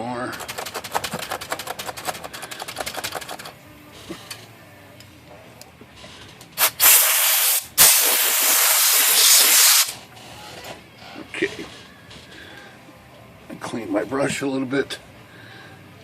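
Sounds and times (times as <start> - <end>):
typewriter type bars clattering: 0.3 - 3.5
compressed air hissing: 6.6 - 10.0.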